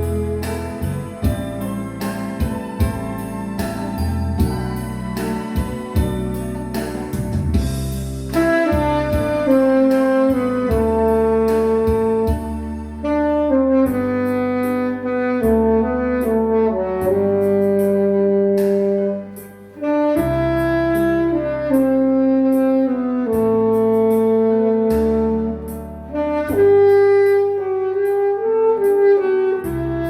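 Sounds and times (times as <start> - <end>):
steady drum beat: 0.0 - 12.9
alto saxophone ballad melody: 0.0 - 30.0
bass line: 0.0 - 30.0.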